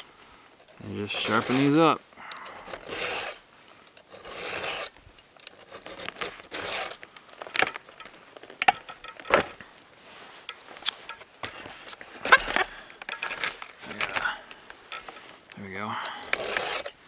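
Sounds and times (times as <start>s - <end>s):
round file rasping on chain: 1.0s - 1.8s, 2.4s - 3.4s, 4.1s - 4.9s, 5.5s - 7.0s, 16.0s - 17.0s.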